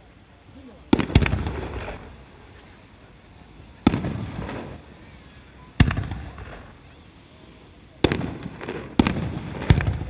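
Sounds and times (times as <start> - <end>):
rolling rumble: 0.0 - 10.0
firework shells bursting: 0.9 - 2.8, 3.6 - 10.0.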